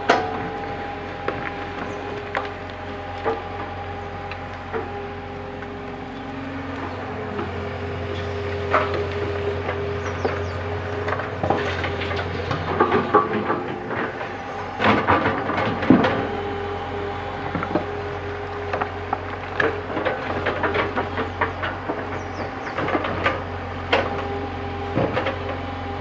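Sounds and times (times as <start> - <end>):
diesel engine running: 0.0 - 26.0
knocks and clattering: 8.6 - 16.3.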